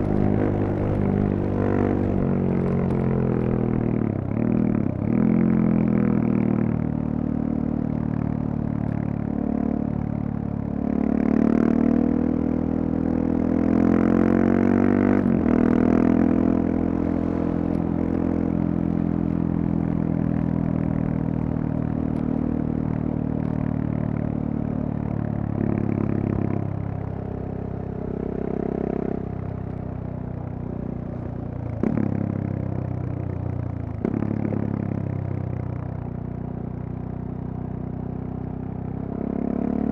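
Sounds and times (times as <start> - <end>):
motorcycle engine revving: 0.0 - 7.8, 10.6 - 27.3, 31.8 - 35.6.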